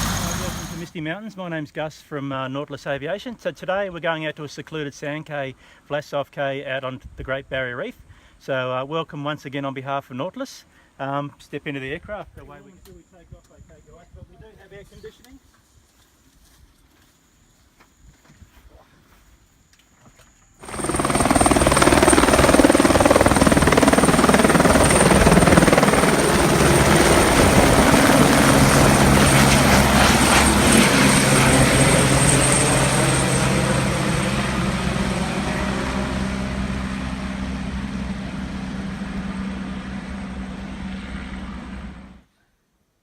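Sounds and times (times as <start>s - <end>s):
helicopter rotor noise: 0.0s - 0.9s, 20.6s - 42.2s.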